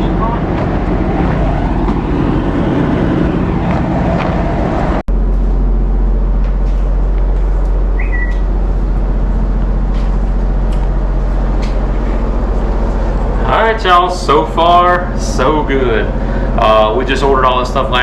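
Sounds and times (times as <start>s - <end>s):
motor droning: 0.0s - 18.0s
high chirp: 7.9s - 8.5s.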